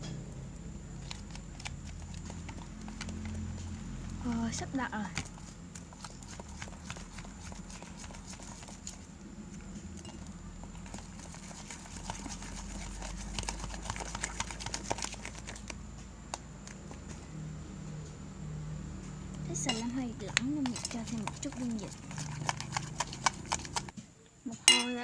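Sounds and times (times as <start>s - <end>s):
slime stirring sticky clicks: 1.0s - 3.7s, 4.4s - 9.0s, 10.0s - 17.2s, 19.5s - 23.9s.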